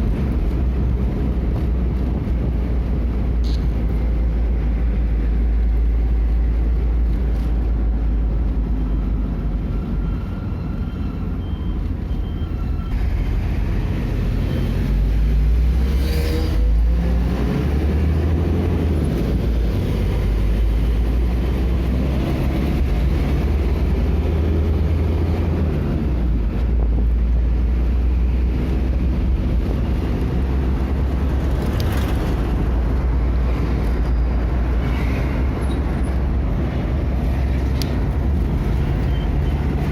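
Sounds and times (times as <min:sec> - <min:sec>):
vehicle engine and road rumble: 0:00.0 - 0:39.9.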